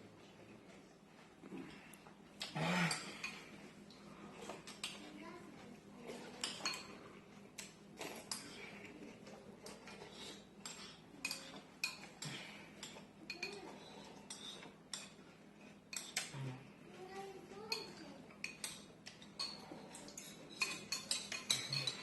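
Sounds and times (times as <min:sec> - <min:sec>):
spoons clinking against bowls: 0:06.4 - 0:07.0, 0:09.7 - 0:15.2, 0:15.9 - 0:16.3, 0:17.7 - 0:22.0.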